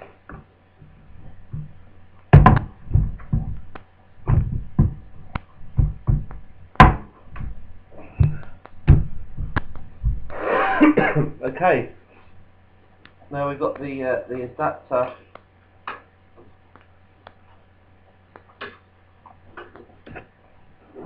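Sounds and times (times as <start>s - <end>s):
plastic laptop casing knocking: 1.2s - 10.3s.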